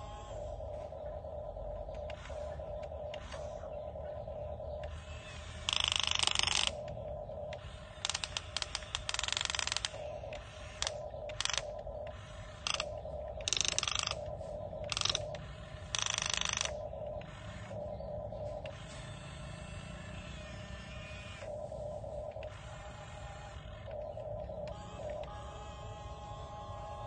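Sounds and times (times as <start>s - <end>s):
steady whine: 0.0s - 27.0s
gears ratcheting and grinding: 4.8s - 17.8s.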